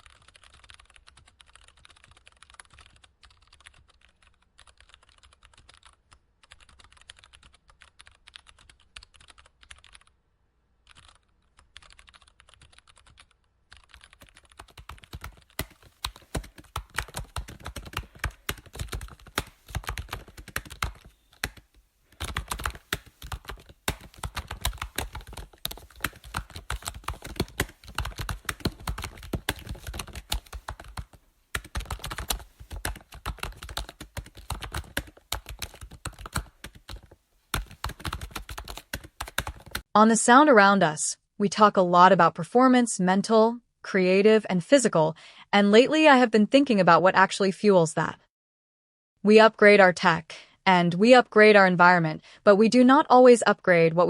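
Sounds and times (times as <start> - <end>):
typing on computer keyboard: 0.0 - 10.1, 10.8 - 39.9.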